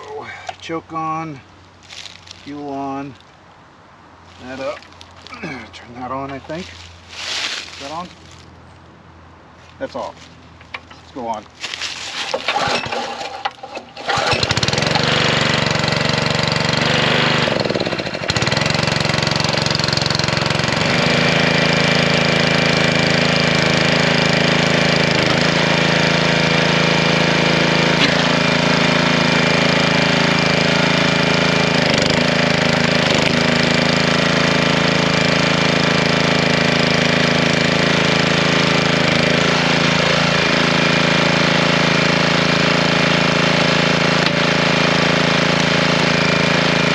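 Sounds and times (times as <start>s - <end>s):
small engine starting and running: 11.6s - 46.9s.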